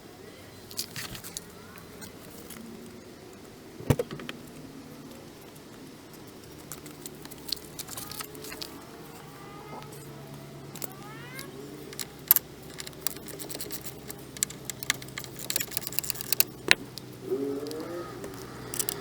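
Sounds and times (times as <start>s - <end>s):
tools clicking on metal parts: 10.7s - 19.0s.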